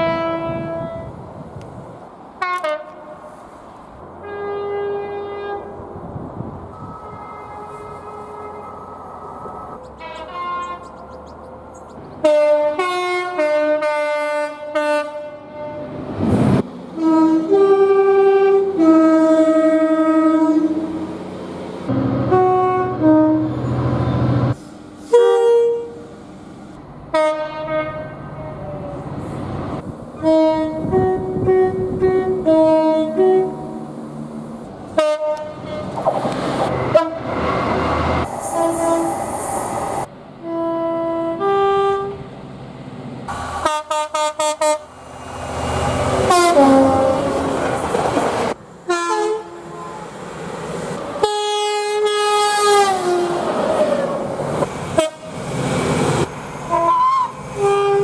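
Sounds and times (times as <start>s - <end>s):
train horn blasts: 0.0s - 1.2s, 2.4s - 3.3s, 4.2s - 5.8s, 6.7s - 11.0s, 12.2s - 16.0s, 17.0s - 21.0s, 21.9s - 24.4s, 25.0s - 26.0s, 27.1s - 28.8s, 30.2s - 34.0s, 34.9s - 36.0s, 36.9s - 37.4s, 38.4s - 39.2s, 40.4s - 42.3s, 43.3s - 44.9s, 46.0s - 47.6s, 48.9s - 50.1s, 51.2s - 53.4s, 55.0s - 55.4s, 56.7s - 58.0s
train passing on rails: 0.0s - 58.0s.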